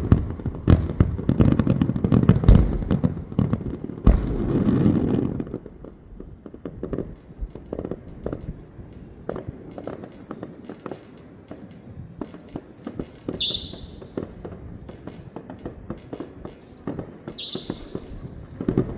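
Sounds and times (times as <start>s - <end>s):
fireworks bangs and pops: 0.0s - 18.9s
fireworks hissing bursts: 7.0s - 18.9s.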